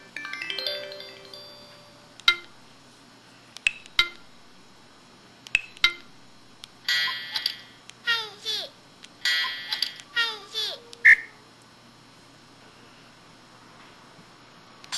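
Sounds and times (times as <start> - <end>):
descending chime melody: 0.0 - 2.1.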